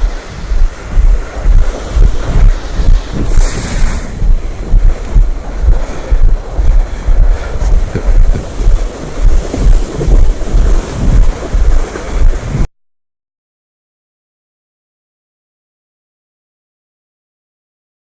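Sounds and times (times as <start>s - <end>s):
wind buffeting microphone: 0.0s - 12.7s.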